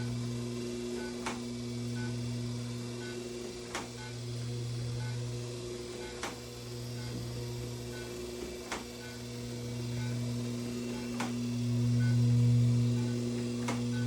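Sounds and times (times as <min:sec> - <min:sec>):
laser unit electrical hum: 0:00.0 - 0:14.0.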